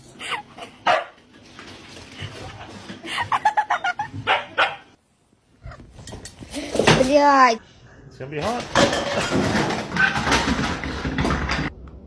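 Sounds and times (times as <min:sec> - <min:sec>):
dog barking and yipping: 0:00.8 - 0:01.2, 0:04.2 - 0:05.0.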